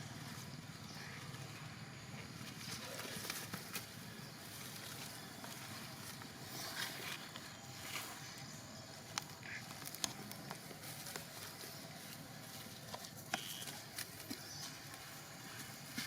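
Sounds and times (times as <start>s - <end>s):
faint high calls: 0.0s - 16.0s
outdoor background hiss: 0.0s - 16.0s.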